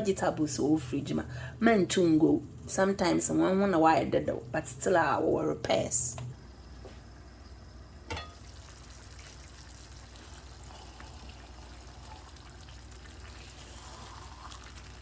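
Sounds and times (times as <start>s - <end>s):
stew sizzling in a pot: 6.4s - 15.0s.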